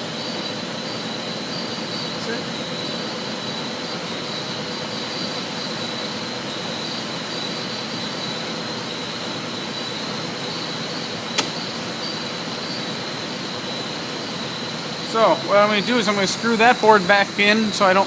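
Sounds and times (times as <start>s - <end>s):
background whir with high whine: 0.0s - 18.0s
sharp click: 11.3s - 11.7s.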